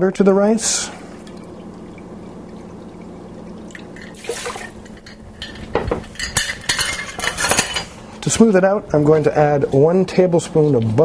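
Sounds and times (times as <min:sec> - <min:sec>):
water pouring into a pot: 0:00.7 - 0:05.7.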